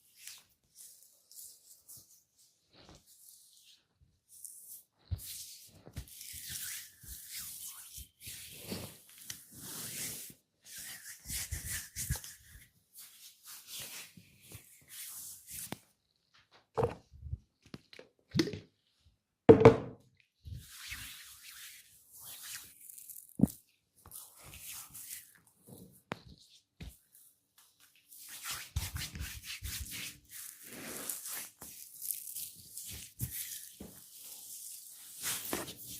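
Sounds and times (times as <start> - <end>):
hands rubbing oiled skin: 6.1 - 15.8.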